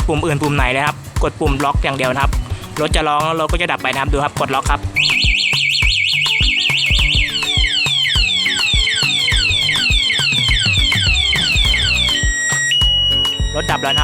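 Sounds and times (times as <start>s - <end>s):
motorcycle alarm siren warbling: 5.0s - 14.0s.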